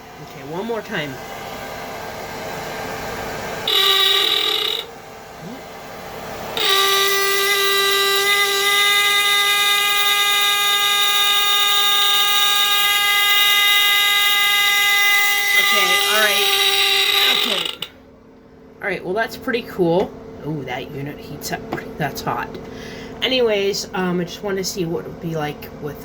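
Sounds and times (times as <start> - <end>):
hairdryer blowing: 0.0 - 17.9
alarm steady tone: 3.6 - 5.6, 6.6 - 17.9.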